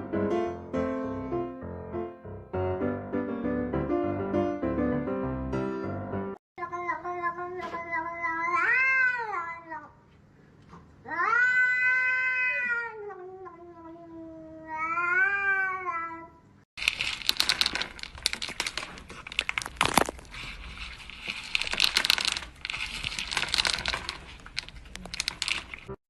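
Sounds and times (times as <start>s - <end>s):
cat meowing: 11.1s - 13.4s
crackling scratchy noise with clicks: 16.8s - 26.0s.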